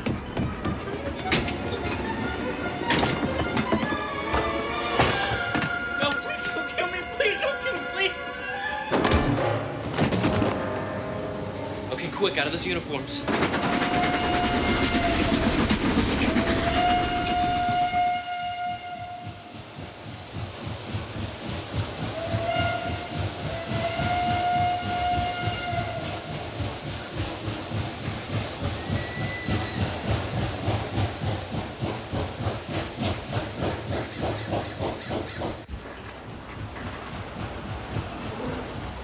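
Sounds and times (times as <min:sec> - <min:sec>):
train chuffing and rolling: 0:00.0 - 0:39.0
steam locomotive whistle: 0:13.3 - 0:19.6, 0:22.0 - 0:26.8.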